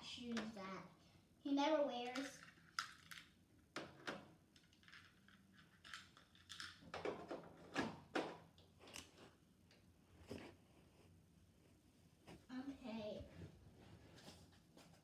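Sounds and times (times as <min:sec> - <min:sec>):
plastic toy pieces clicking: 0:02.1 - 0:03.3, 0:04.6 - 0:06.8.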